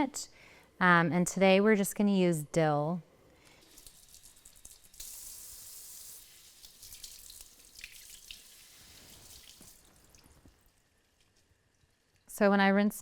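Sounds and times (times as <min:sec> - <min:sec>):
splashes and drips: 0:03.5 - 0:12.3.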